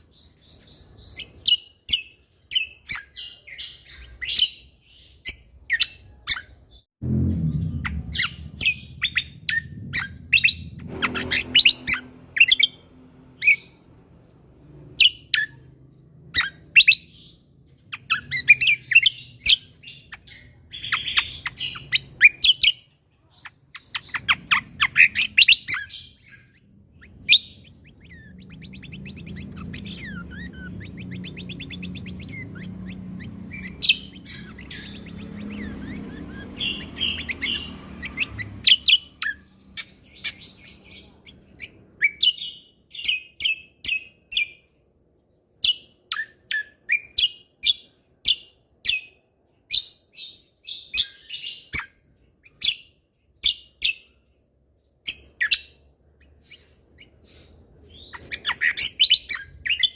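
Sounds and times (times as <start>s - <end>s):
songbird singing: 0.0s - 59.9s
low hum: 7.0s - 15.0s.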